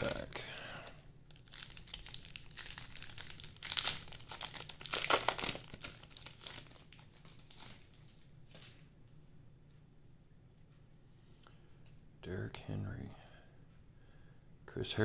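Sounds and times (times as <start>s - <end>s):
plastic wrapper tearing and crinkling: 1.3s - 8.9s.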